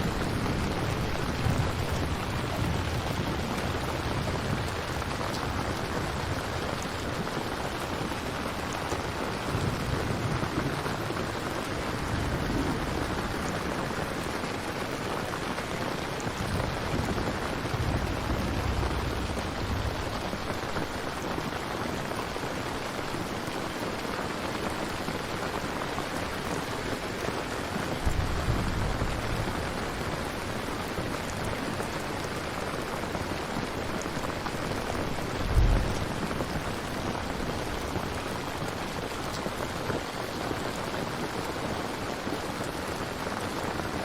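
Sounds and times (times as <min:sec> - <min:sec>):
low rumbles of thunder: 0:00.0 - 0:21.6, 0:27.8 - 0:39.2
heavy rain: 0:00.0 - 0:44.0.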